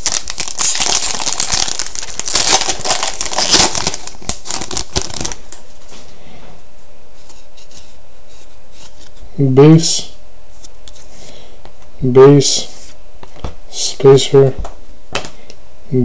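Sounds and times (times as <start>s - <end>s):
card pack wrapper tearing and crinkling: 0.0s - 5.6s.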